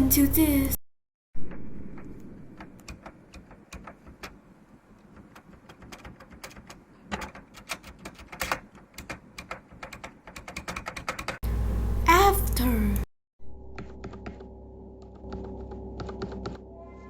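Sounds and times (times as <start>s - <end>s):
mechanical keyboard typing: 2.5s - 11.4s.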